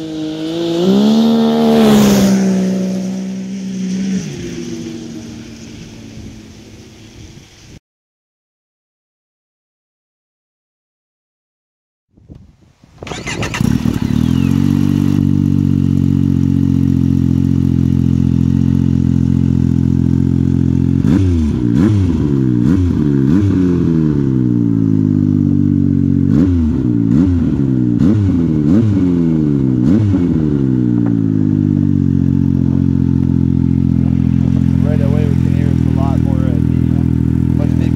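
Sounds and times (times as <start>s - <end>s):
engine throttle blips: 12.3s - 25.2s, 26.2s - 37.9s
snowmobile engine idling: 13.0s - 26.3s, 30.7s - 37.9s.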